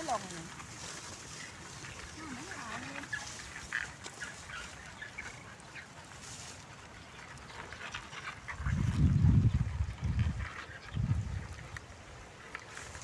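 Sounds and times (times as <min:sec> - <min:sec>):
farm fowl calling: 0:01.2 - 0:06.0.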